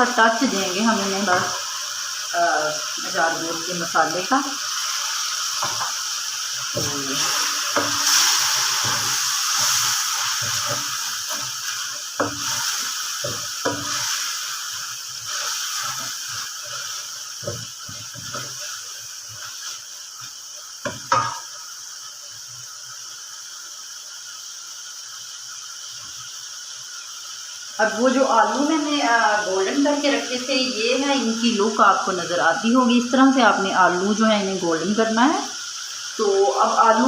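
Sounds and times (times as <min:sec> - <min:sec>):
spices sizzling in hot oil: 0:00.0 - 0:37.0
spoon scraping a pan: 0:00.9 - 0:02.1, 0:04.7 - 0:21.6.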